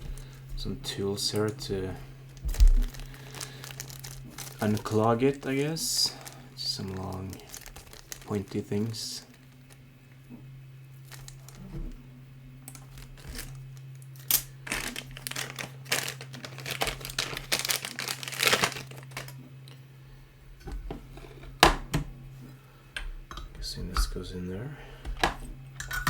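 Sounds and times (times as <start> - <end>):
steady low hum: 0.0 - 26.0
plastic packaging crinkling: 1.4 - 9.9, 11.0 - 12.0, 12.6 - 19.8.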